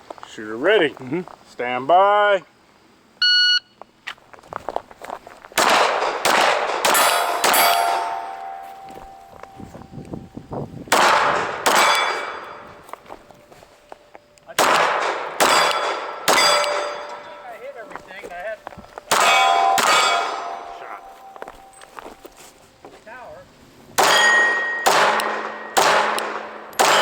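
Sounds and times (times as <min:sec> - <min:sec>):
pistol shots: 0:05.6 - 0:09.3, 0:10.9 - 0:12.7, 0:14.5 - 0:17.4, 0:19.1 - 0:21.8, 0:24.0 - 0:27.0
steel target plate clanging: 0:05.9 - 0:10.0, 0:11.0 - 0:12.9, 0:14.9 - 0:18.2, 0:19.0 - 0:22.4, 0:24.0 - 0:27.0.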